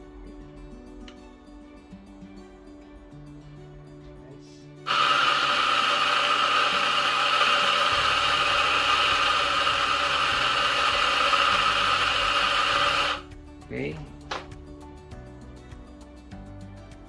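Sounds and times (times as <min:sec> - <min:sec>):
quiet background music: 0:00.0 - 0:17.0
coffee grinder whirring: 0:04.9 - 0:13.3.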